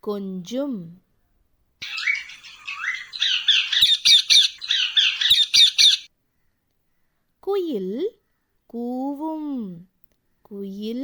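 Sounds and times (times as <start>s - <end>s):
parrot squawking and chattering: 1.8s - 6.1s.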